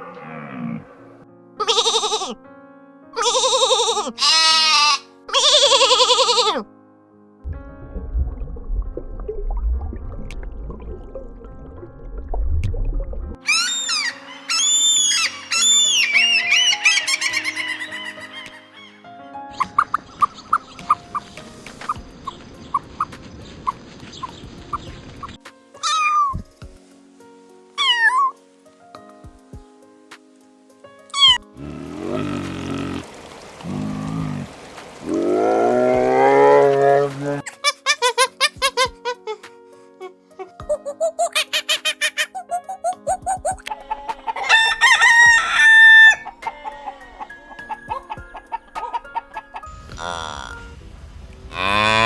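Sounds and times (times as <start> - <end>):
background music: 0.0 - 52.0
repeated animal calls: 13.5 - 19.0, 31.2 - 37.4, 51.5 - 52.0
rooster crowing: 13.5 - 19.0, 44.3 - 47.3
chickens clucking: 13.6 - 19.0, 46.1 - 49.8.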